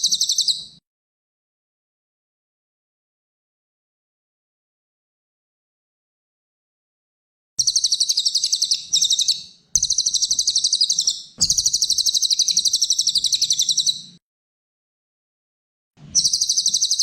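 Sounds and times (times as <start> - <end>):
songbird chirping trill: 0.0 - 0.8, 7.6 - 14.2, 16.2 - 17.0.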